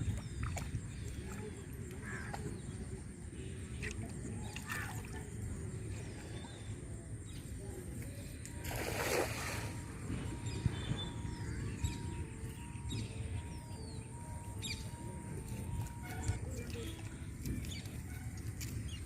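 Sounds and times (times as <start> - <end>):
water splash: 8.6 - 9.9.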